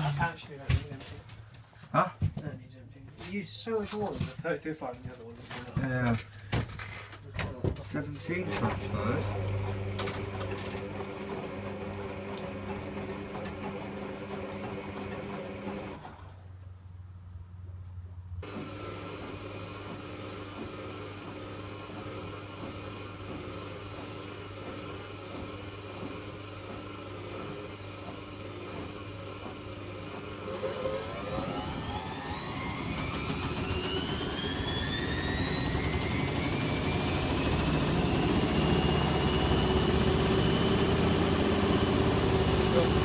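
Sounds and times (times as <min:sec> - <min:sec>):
washing machine drum turning: 0:07.4 - 0:15.9
washing machine spin whine: 0:08.2 - 0:16.4, 0:18.4 - 0:43.0.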